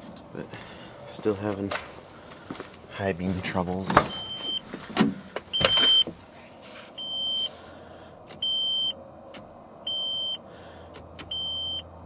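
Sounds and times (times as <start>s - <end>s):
car warning chime beeping: 4.1s - 4.6s, 5.5s - 6.1s, 7.0s - 7.6s, 8.4s - 9.0s, 9.9s - 10.4s, 11.3s - 11.9s.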